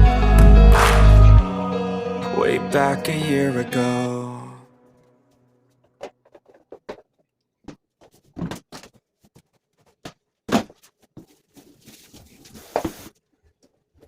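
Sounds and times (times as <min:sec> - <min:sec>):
objects knocking and clicking: 0:06.0 - 0:09.0.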